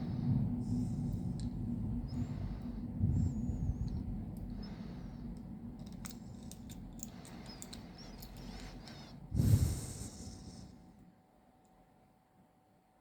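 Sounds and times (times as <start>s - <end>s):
tools clicking and scraping: 5.8s - 9.2s.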